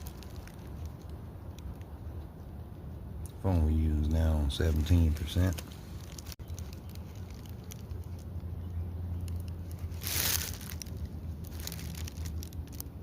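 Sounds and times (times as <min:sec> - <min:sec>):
crinkling rustle: 0:00.0 - 0:02.0, 0:04.6 - 0:13.0.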